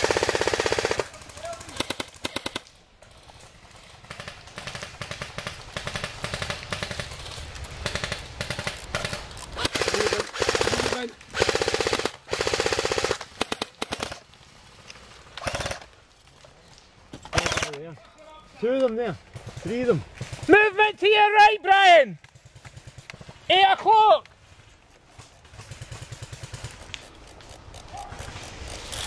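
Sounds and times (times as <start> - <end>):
airsoft guns firing bursts: 0.0 - 2.7, 3.8 - 14.2, 15.4 - 15.9, 17.3 - 17.8, 22.3 - 23.7, 25.2 - 27.2.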